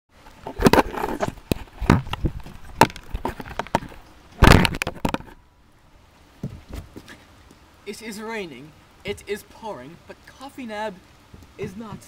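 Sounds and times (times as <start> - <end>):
sharp knocks and crackles: 0.2 - 5.4, 6.4 - 7.2.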